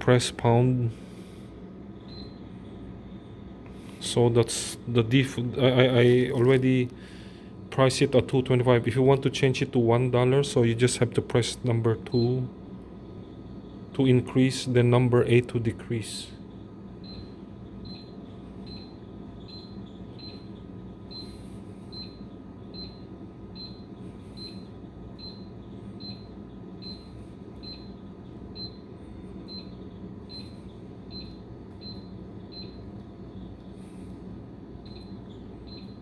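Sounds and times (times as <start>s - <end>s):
steady low hum: 0.0s - 36.0s
keypad beeping: 2.1s - 2.4s, 17.0s - 22.2s, 22.8s - 28.8s, 29.4s - 32.9s, 34.8s - 36.0s.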